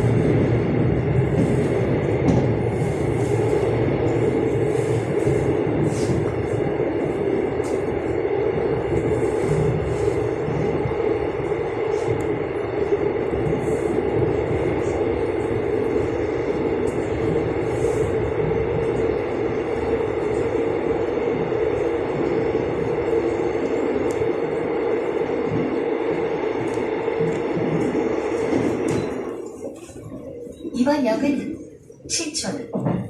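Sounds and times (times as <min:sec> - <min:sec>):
train hum: 0:00.0 - 0:33.0
train wheels rumbling on rails: 0:00.0 - 0:33.0.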